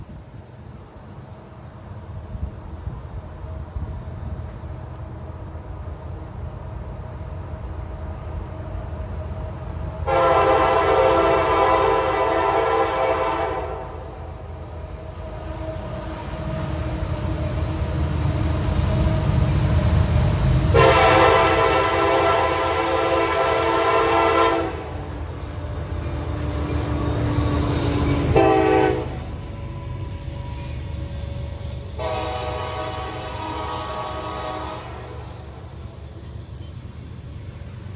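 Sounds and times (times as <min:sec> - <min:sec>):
train rumble: 0:00.0 - 0:37.9
locomotive air horn blasts: 0:10.0 - 0:14.3, 0:20.7 - 0:25.1, 0:27.9 - 0:29.4, 0:31.9 - 0:35.6.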